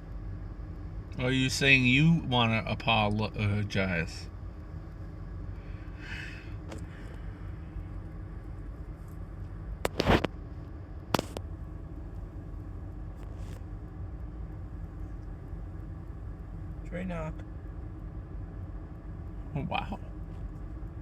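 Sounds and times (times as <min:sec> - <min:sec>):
steady low rumble: 0:00.0 - 0:21.0.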